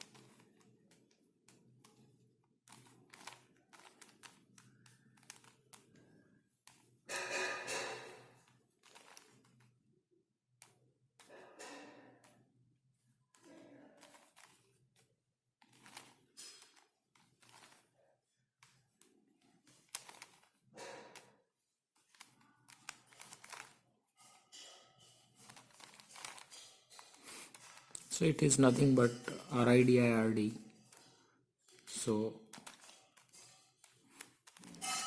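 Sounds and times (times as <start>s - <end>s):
plastic puzzle clicking: 0.0s - 2.0s, 2.6s - 6.0s, 6.7s - 9.7s, 14.0s - 18.0s, 18.6s - 21.3s, 22.0s - 23.8s, 25.4s - 35.0s.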